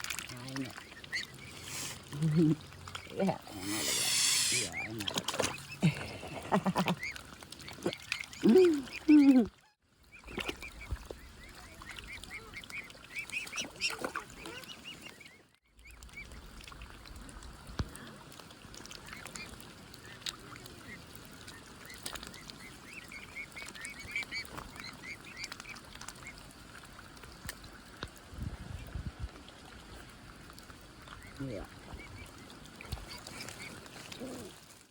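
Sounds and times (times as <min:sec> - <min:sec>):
waterfowl calling: 0:00.4 - 0:15.4
person speaking a word: 0:03.1 - 0:05.1.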